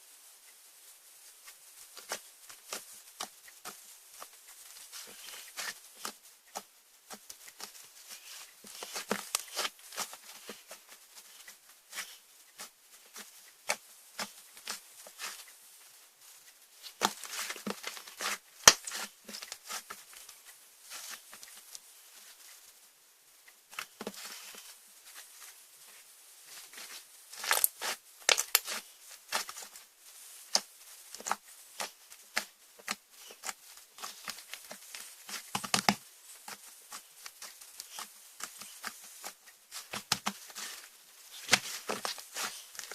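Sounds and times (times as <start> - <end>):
slime popping and crackling: 7.6 - 10.6, 16.9 - 19.8, 26.8 - 29.7, 30.4 - 42.9.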